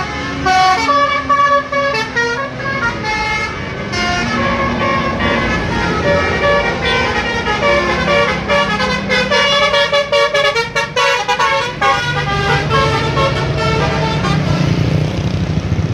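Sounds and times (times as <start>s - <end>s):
musical bus horn melody: 0.0s - 14.9s
bus engine running: 0.0s - 15.9s.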